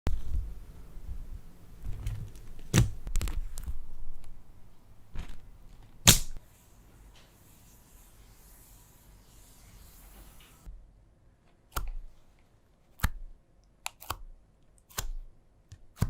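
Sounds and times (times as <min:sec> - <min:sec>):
sharp snap: 0:06.0 - 0:06.4.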